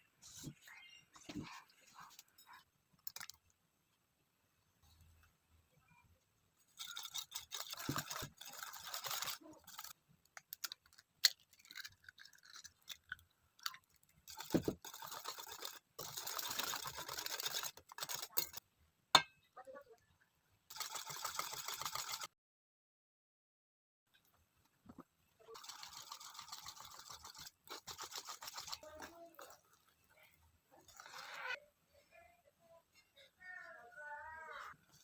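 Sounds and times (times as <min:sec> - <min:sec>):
whisking in a bowl: 0:06.8 - 0:10.0, 0:14.3 - 0:18.6, 0:20.7 - 0:22.3, 0:25.5 - 0:29.8.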